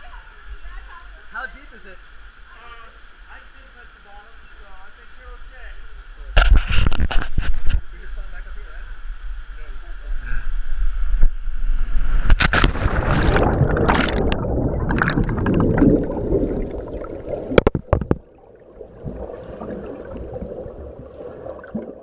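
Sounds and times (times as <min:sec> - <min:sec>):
water splashing and gurgling: 0:11.6 - 0:22.0.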